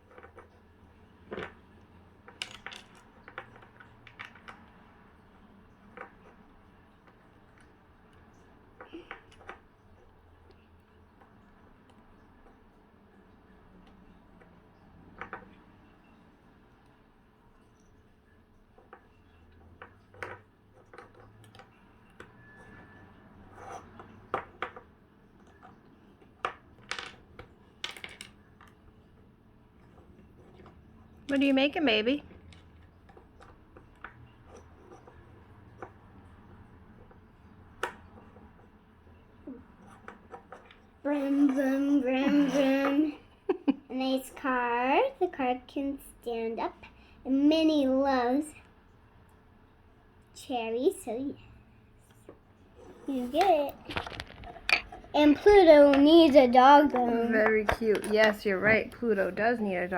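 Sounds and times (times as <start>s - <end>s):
plastic toy pieces clattering: 2.2s - 4.6s, 26.4s - 28.8s, 53.2s - 58.8s
plastic bricks clicking together: 2.3s - 4.7s, 26.4s - 28.8s, 53.9s - 55.0s, 57.4s - 58.4s.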